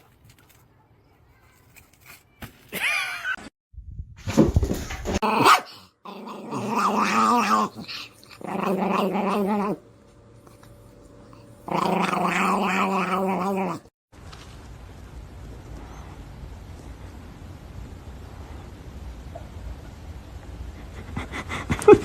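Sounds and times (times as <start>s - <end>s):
dog growling and grumbling: 5.2s - 9.8s, 11.6s - 13.9s.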